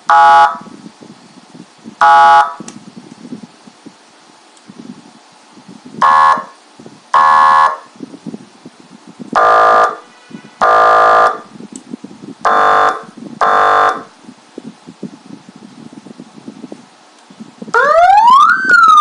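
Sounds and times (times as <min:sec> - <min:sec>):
electronic siren horn blasts: 0:00.1 - 0:00.7, 0:02.0 - 0:02.6, 0:06.0 - 0:07.9, 0:09.3 - 0:11.5, 0:12.4 - 0:14.1.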